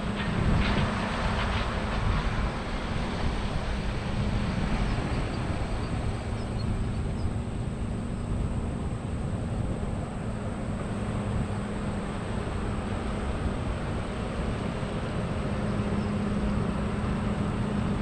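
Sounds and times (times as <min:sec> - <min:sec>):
diesel farm machinery running: 0:00.0 - 0:18.0.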